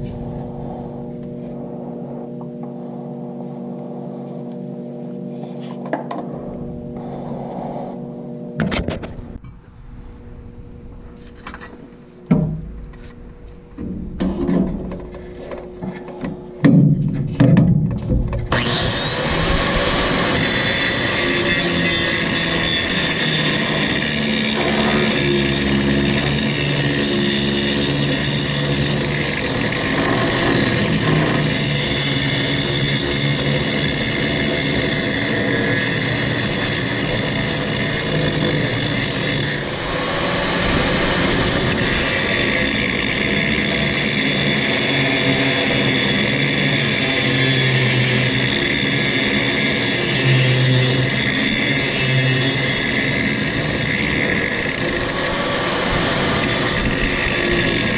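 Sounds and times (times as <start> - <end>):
power tool cutting steel: 18.4 - 57.9.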